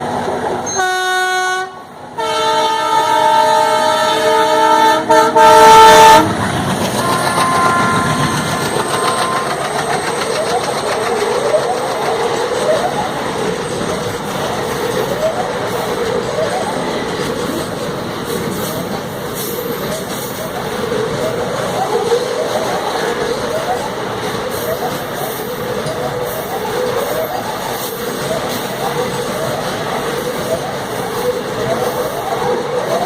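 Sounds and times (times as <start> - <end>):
train wagons rumbling on rails: 0.0 - 33.0
train horn blasts: 0.6 - 9.6.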